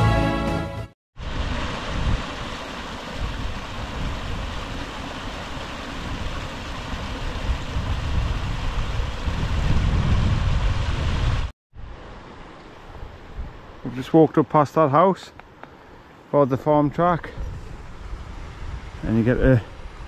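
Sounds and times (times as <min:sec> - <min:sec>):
wind buffeting microphone: 0:06.0 - 0:11.5.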